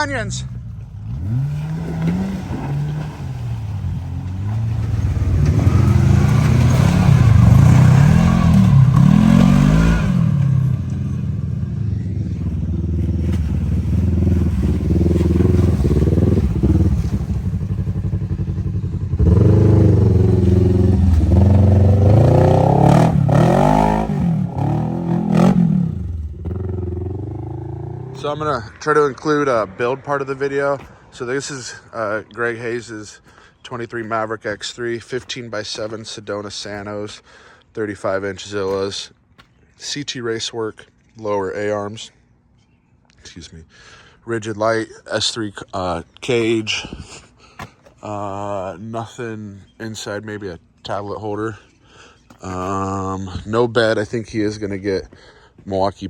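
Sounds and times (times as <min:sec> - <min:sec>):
utility vehicle engine revving: 0:00.0 - 0:31.9.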